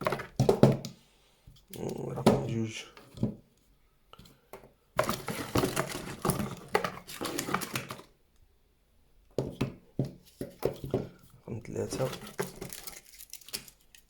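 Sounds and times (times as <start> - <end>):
packaging rustling and crinkling: 5.0 - 8.2, 10.3 - 14.0.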